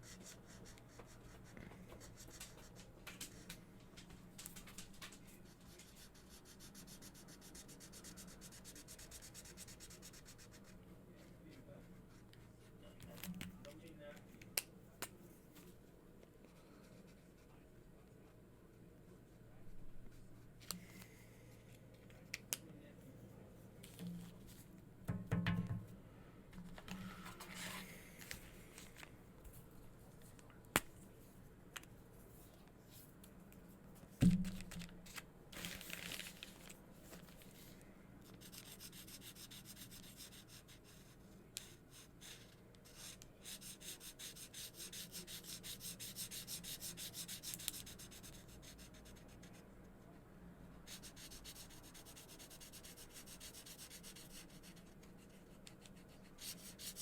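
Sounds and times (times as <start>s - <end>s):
markers scribbling on paper: 5.5s - 10.7s, 38.4s - 49.6s, 50.9s - 57.0s.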